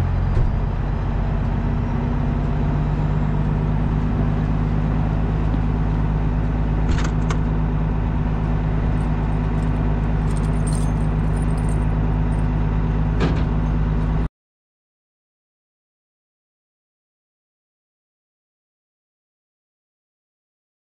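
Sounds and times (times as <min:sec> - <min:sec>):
vehicle engine drone: 0:00.0 - 0:14.3
jingling rattles: 0:09.0 - 0:12.4.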